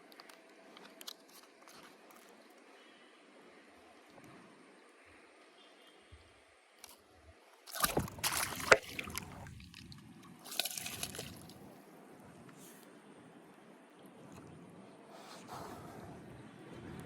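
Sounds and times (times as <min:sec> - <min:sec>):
water splashing and sloshing: 0:07.6 - 0:11.9.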